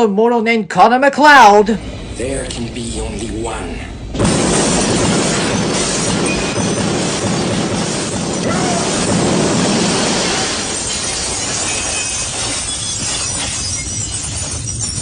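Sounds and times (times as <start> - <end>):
crashing of breaking glass and debris: 4.2 - 15.0.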